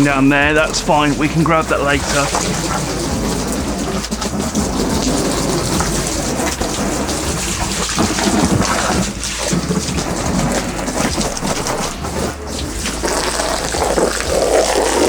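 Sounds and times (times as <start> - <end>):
hose water splattering: 0.0 - 15.0.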